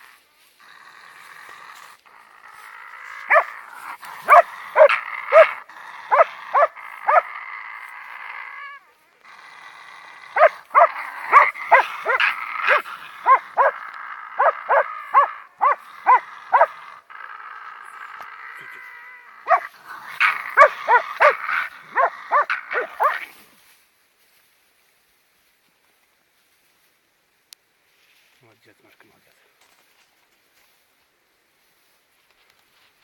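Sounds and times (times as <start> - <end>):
dog whining: 3.2 - 3.6, 4.2 - 7.2, 10.4 - 16.8, 17.9 - 23.2
dog barking: 3.3 - 3.6, 4.2 - 7.3, 10.4 - 13.8, 14.4 - 16.8, 19.5 - 23.2.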